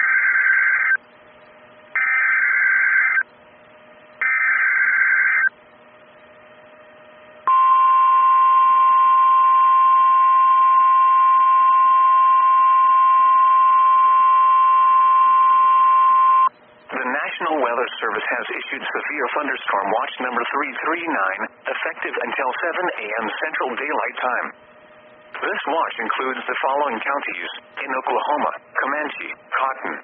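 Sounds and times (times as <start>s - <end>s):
steady alarm tone: 0.0s - 1.1s, 1.9s - 3.3s, 3.9s - 5.6s, 7.4s - 16.5s
warbling data tone bursts: 1.9s - 3.2s, 4.2s - 5.5s.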